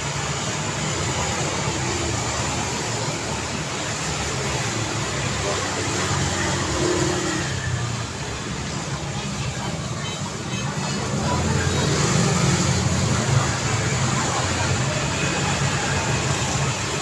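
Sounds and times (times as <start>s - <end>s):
loud engine of passing vehicle: 0.0s - 9.8s, 10.6s - 17.0s
road traffic passing: 0.0s - 17.0s.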